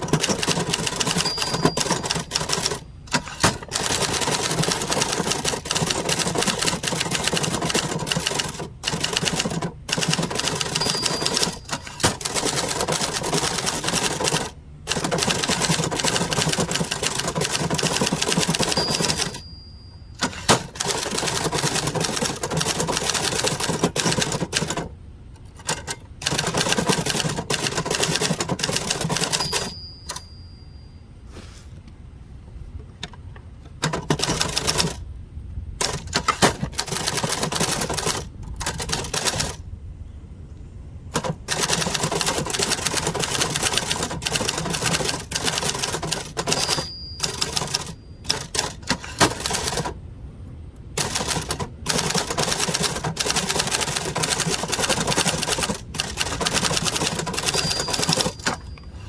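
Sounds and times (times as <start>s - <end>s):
typewriter key strikes: 0.0s - 19.6s, 20.2s - 24.9s, 25.6s - 30.4s, 33.8s - 35.0s, 35.8s - 39.6s, 41.2s - 49.9s, 51.0s - 59.0s
typewriter bell ring: 0.0s - 24.8s, 25.7s - 31.1s, 41.2s - 49.9s, 51.0s - 59.0s.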